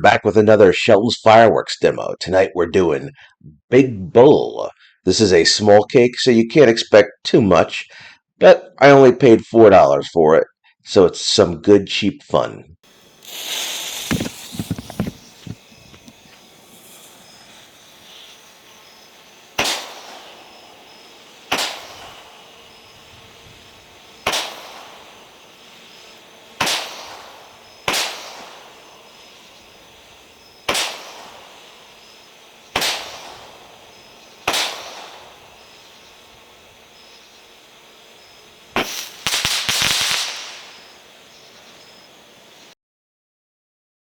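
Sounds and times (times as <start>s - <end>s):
firework shots banging: 13.2s - 41.3s.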